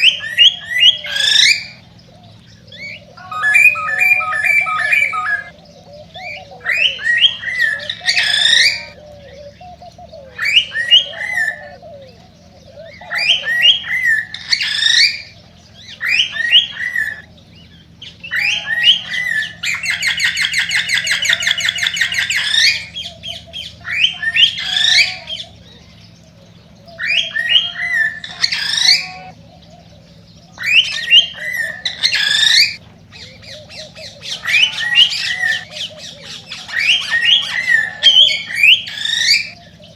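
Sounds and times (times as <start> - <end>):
cockatiel whistling song: 3.2 - 5.5, 27.1 - 29.4
fast chattering bird trill: 3.2 - 5.5, 27.6 - 29.3, 30.8 - 39.6.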